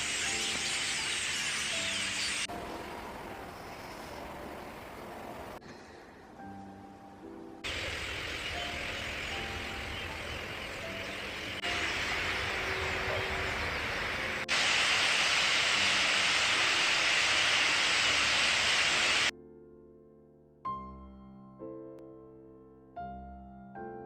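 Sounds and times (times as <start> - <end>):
soft piano music: 0.0 - 14.5, 19.3 - 24.0
steady outdoor rushing noise: 7.6 - 19.3.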